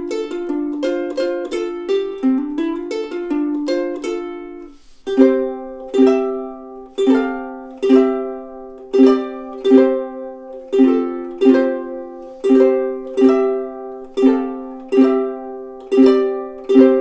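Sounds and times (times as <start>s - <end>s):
ukulele chords strummed slowly: 0.0s - 17.0s
ukulele note ringing: 0.0s - 17.0s.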